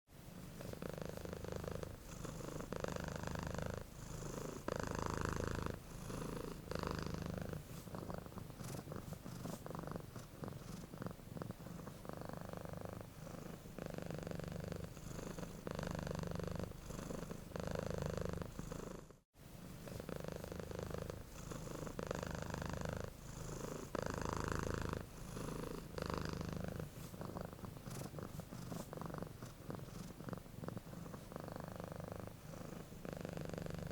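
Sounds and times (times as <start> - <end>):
cat snoring: 0.4 - 33.9.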